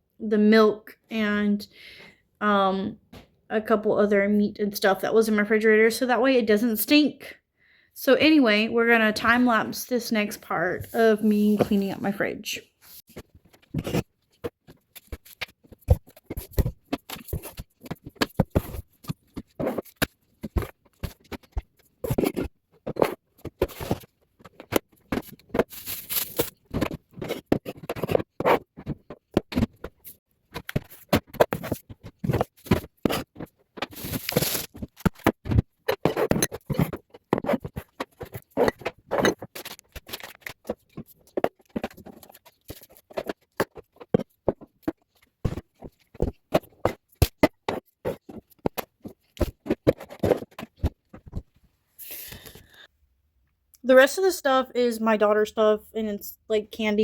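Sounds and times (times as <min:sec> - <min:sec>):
rapid clatter of knocks and scrapes: 0:13.0 - 0:51.6.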